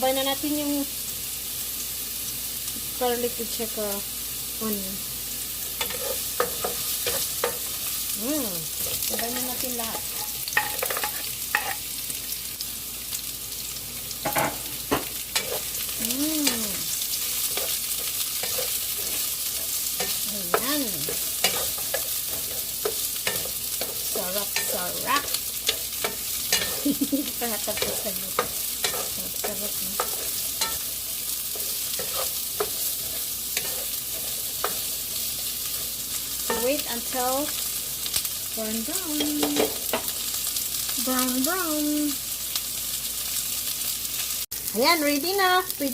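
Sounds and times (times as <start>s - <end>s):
garlic and onion sizzling in oil: 0.0s - 45.9s
utensil scraping a pan: 5.8s - 7.8s, 17.2s - 36.8s.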